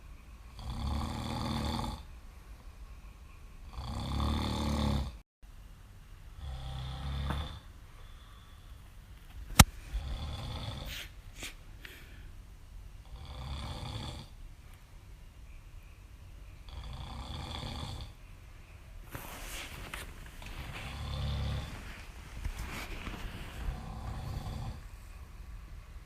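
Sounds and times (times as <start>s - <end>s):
person snoring: 0.6s - 2.1s, 3.7s - 5.2s, 6.4s - 7.7s, 10.0s - 11.1s, 13.0s - 14.3s, 16.7s - 18.2s, 20.4s - 22.0s, 23.4s - 24.9s.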